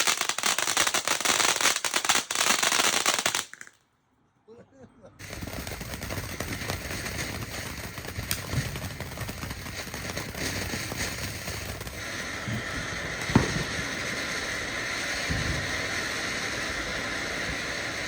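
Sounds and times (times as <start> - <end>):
fireworks popping and crackling: 0.0 - 3.8, 5.2 - 18.0
firework bang: 5.2 - 18.0
steady hiss: 5.2 - 18.0.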